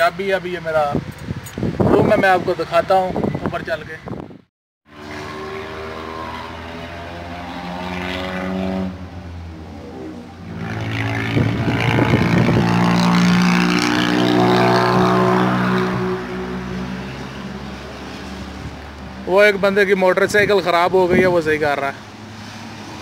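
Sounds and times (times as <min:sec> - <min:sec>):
motorcycle engine revving: 0:04.9 - 0:19.4.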